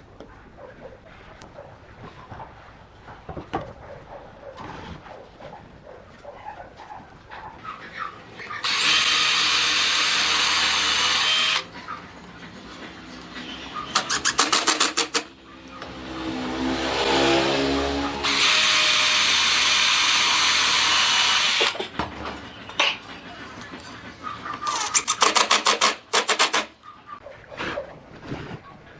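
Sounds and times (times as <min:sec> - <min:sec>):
power tool hissing and whining: 0:08.6 - 0:11.7, 0:18.0 - 0:21.8.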